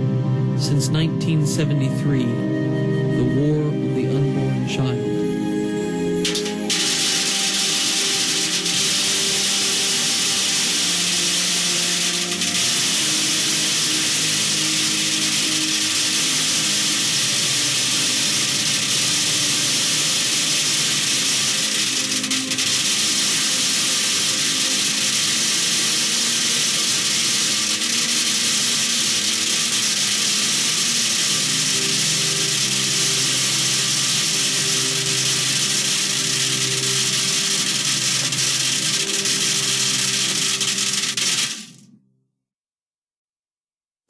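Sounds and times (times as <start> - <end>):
metal pellets rattling on tin can: 6.3 - 41.8.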